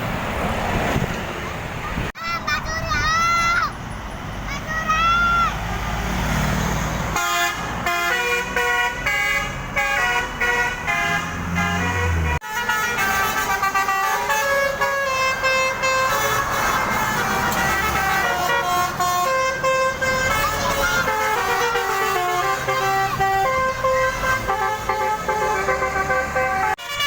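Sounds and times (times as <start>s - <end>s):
bus air horn melody: 7.1s - 27.0s.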